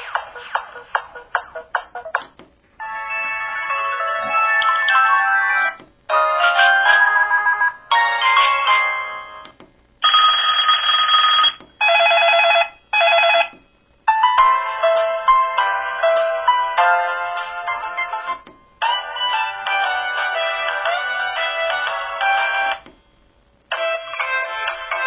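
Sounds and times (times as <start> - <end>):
phone ringtone melodies: 2.8 - 22.8.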